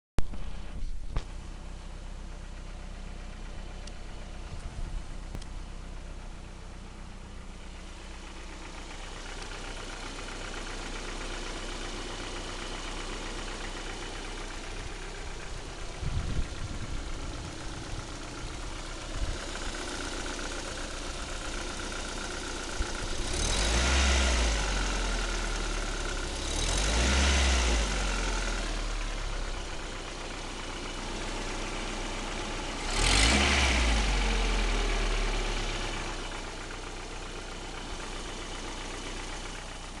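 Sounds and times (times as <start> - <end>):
car engine idling and revving: 0.2 - 40.0
engine knock: 2.4 - 40.0.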